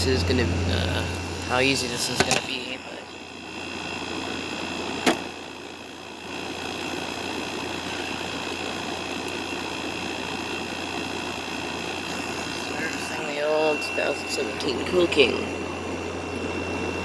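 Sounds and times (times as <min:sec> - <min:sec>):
air conditioner humming: 0:00.0 - 0:17.0.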